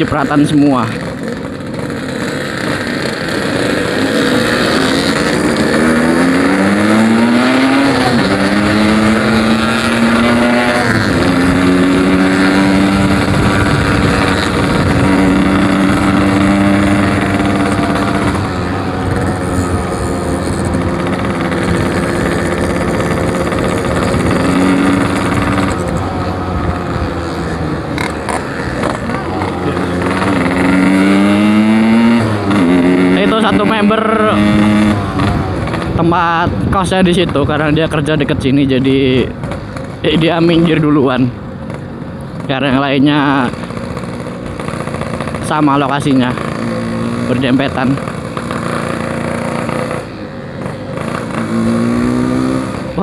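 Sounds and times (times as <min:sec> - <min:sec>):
motorcycle engine revving: 0:00.0 - 0:53.0.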